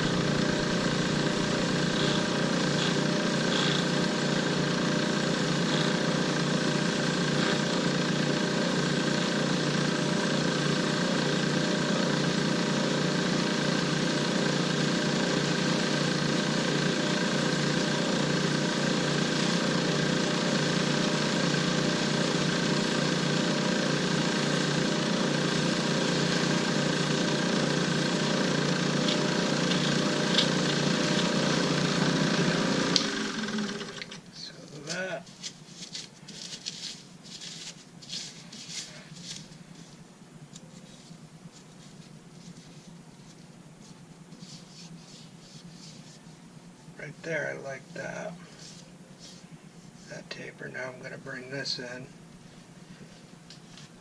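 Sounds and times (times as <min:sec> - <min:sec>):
lathe motor humming: 0:00.0 - 0:34.2.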